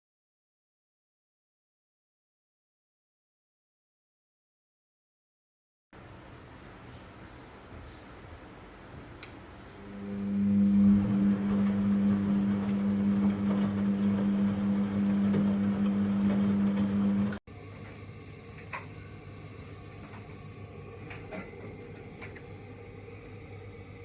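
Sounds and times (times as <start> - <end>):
washing machine hum: 6.0 - 24.0
low hum: 9.7 - 24.0.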